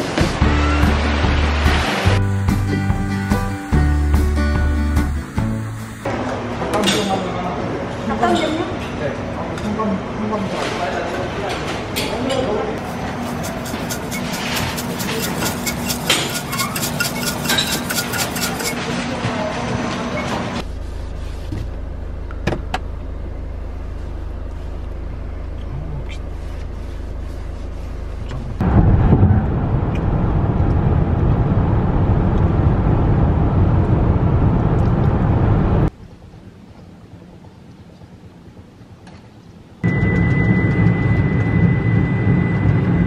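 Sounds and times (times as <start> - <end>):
vehicle rumble: 0.0 - 6.1, 20.6 - 39.0.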